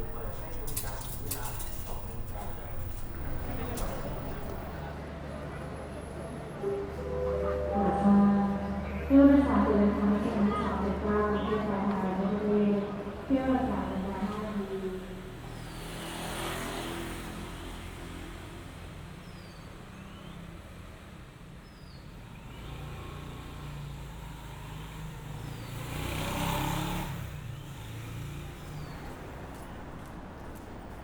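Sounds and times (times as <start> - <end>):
motor scooters passing: 0.0 - 4.9, 9.9 - 31.0
low engine hum: 0.0 - 5.0.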